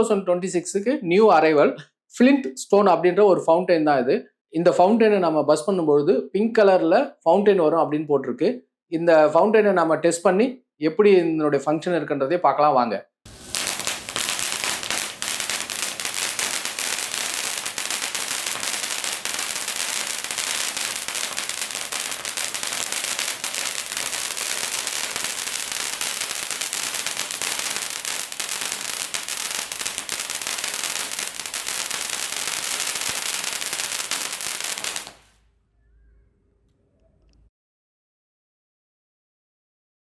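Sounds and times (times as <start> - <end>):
fountain firework hissing: 13.3 - 35.3
firework crackles: 13.3 - 35.4.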